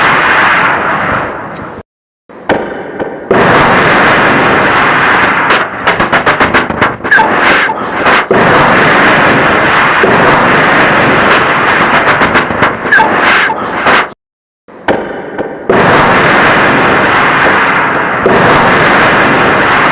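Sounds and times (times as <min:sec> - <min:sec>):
mouth machine-gun fire: 0:02.5 - 0:14.2, 0:14.9 - 0:19.9
man making explosion sounds: 0:02.6 - 0:14.1.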